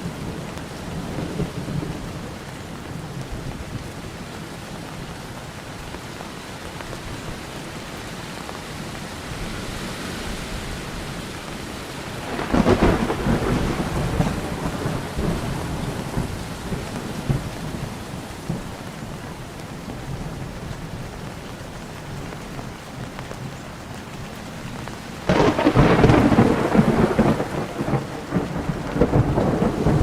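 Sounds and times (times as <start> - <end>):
rain falling steadily: 0.0 - 30.0
thunder rumbling: 12.1 - 19.2, 25.2 - 30.0.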